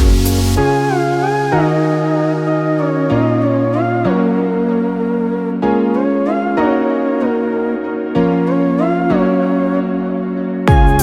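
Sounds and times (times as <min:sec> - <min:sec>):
gliding melody over held chords: 0:00.0 - 0:11.0.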